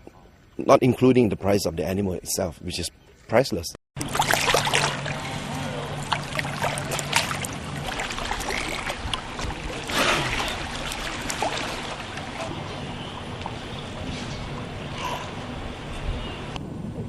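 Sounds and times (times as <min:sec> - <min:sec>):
loud water splash: 0:04.0 - 0:12.5
water splashing against boat hull: 0:04.0 - 0:13.8
low steady hum: 0:04.0 - 0:17.0.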